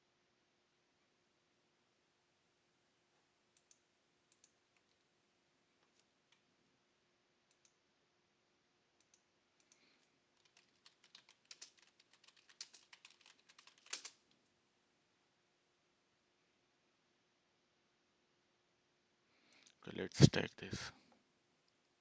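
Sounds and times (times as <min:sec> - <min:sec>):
keyboard typing: 0:09.0 - 0:14.3.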